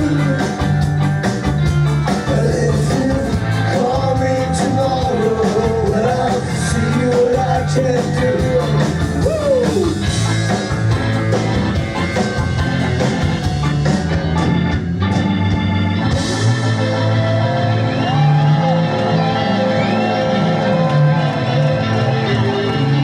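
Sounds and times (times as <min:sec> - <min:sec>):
organ: 0:00.0 - 0:23.0
rock reggae band playing: 0:00.0 - 0:23.0.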